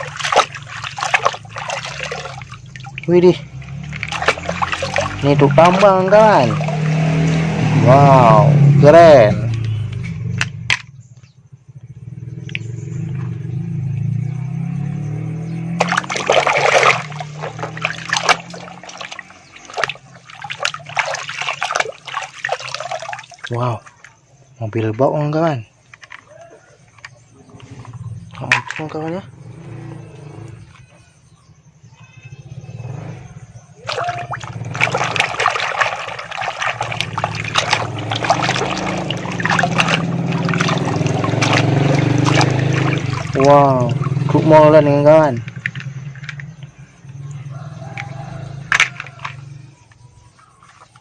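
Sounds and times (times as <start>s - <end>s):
water splashing and trickling: 0.0s - 10.1s, 12.9s - 31.2s, 33.7s - 51.0s
plastic toys knocking: 10.4s - 10.9s, 25.9s - 27.2s, 27.8s - 29.2s, 47.9s - 49.5s.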